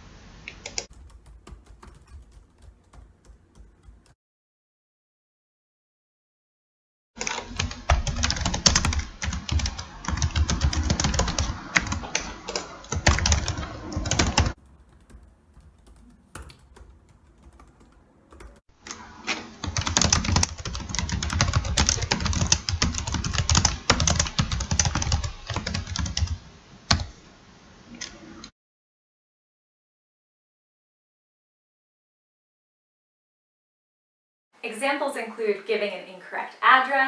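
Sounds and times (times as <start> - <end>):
fast irregular clicking: 0.7 - 4.2, 7.2 - 18.7, 19.6 - 26.3.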